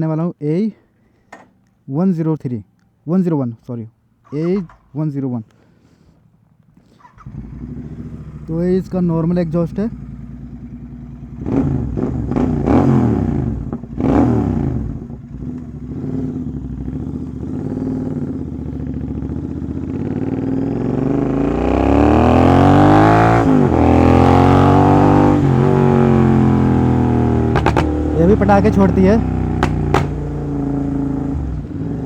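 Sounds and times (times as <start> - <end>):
motorcycle engine revving: 7.1 - 32.0.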